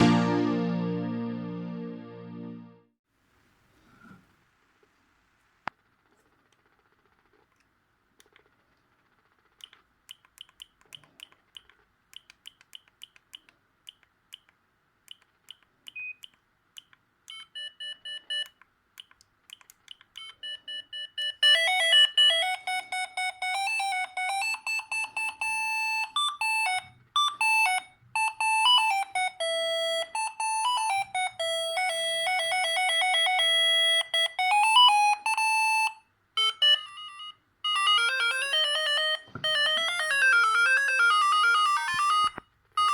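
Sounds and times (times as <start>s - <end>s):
electronic beeped melody: 0.0s - 2.8s
mobile phone ringtone beeps: 20.4s - 42.9s.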